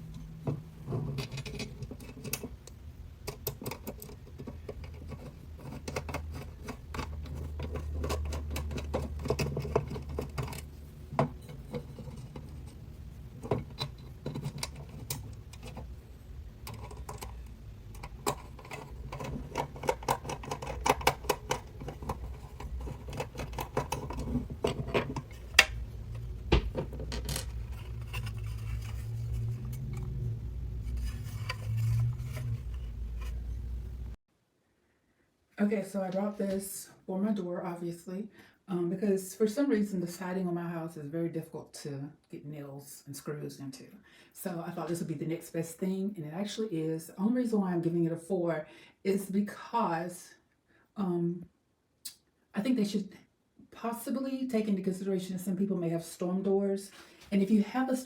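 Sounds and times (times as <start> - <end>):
low rumble: 24.4 - 34.2.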